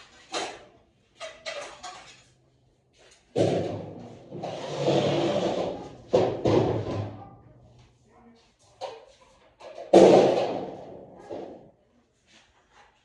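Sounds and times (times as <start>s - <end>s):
rough scraping noise: 4.0s - 6.2s.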